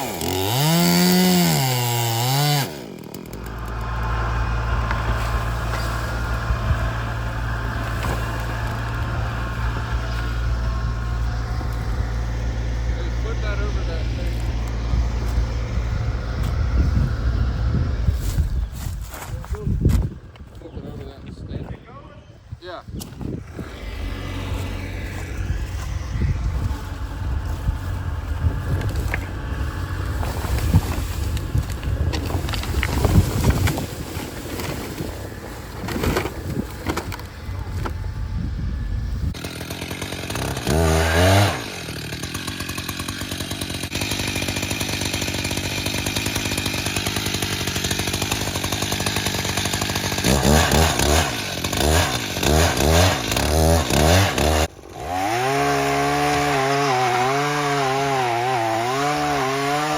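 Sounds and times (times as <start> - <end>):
chainsaw revving: 0.0 - 18.0, 23.4 - 38.1, 38.8 - 59.9
low rough rumbling noise: 3.3 - 22.5, 23.2 - 39.4.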